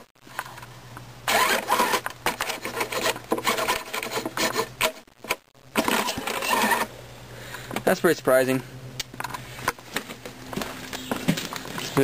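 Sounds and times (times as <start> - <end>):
small engine pull-start cranking: 1.3 - 4.9, 5.8 - 6.9.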